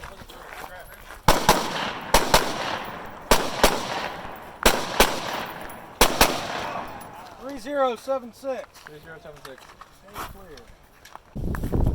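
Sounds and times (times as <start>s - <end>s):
rifle shots: 1.3s - 7.5s.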